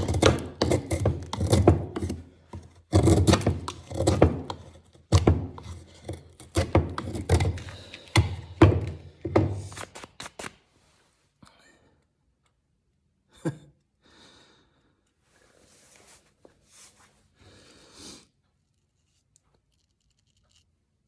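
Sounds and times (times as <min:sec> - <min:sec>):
knife whittling wood: 0:00.0 - 0:10.5.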